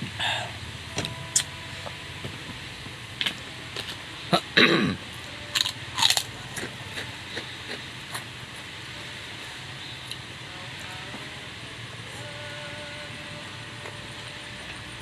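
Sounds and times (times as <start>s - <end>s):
low steady hum: 0.0s - 15.0s
chewing and crunching: 5.5s - 8.7s.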